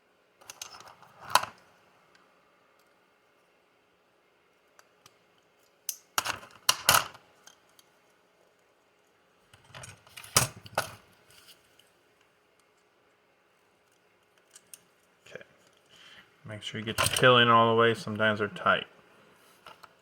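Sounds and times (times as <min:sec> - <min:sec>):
plastic parts clicking and rattling: 0:00.4 - 0:01.6.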